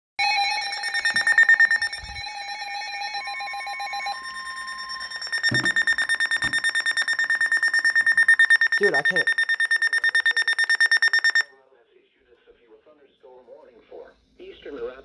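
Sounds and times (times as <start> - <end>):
pulsing alarm tones: 0.2 - 11.5
steady alert tone: 0.2 - 11.5.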